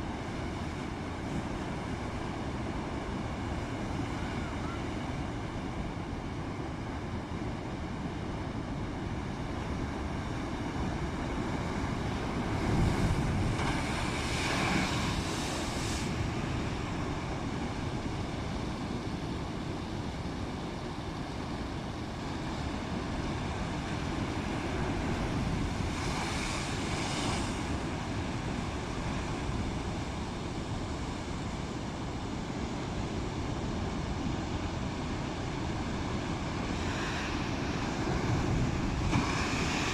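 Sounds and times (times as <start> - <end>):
wind and water noise: 0.0 - 39.9
breaking waves rushing: 10.9 - 18.0, 22.7 - 30.2, 35.2 - 39.9
wind buffeting microphone: 11.0 - 17.7.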